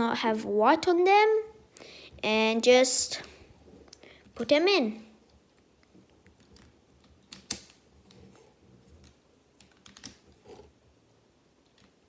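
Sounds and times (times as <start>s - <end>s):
plastic cube pieces clicking: 6.3s - 7.8s, 9.0s - 10.4s.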